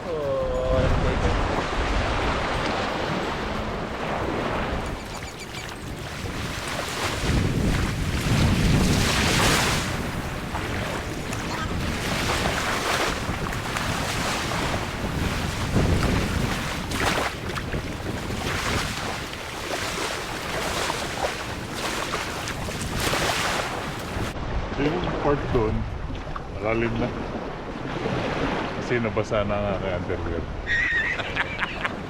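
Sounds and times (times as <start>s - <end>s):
wind buffeting microphone: 0.0s - 28.8s
open water washing: 0.0s - 32.0s.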